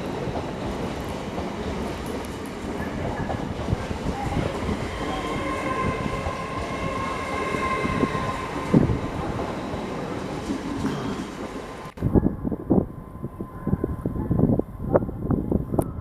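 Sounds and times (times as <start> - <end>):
train wheels rumbling on rail: 0.0 - 16.0
high whine: 4.7 - 16.0.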